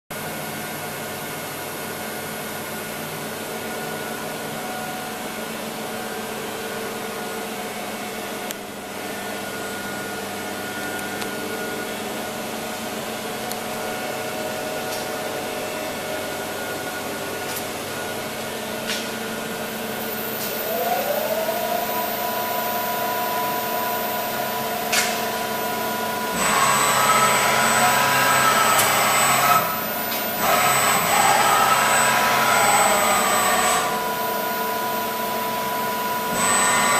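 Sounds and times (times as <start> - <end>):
milling machine motor hum: 19.3 - 36.9
rising machine whine: 19.6 - 36.9.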